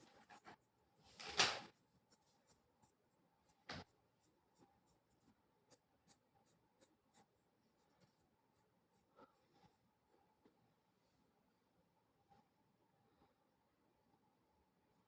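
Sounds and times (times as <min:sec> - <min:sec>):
pencil strokes on paper: 0:01.7 - 0:12.6.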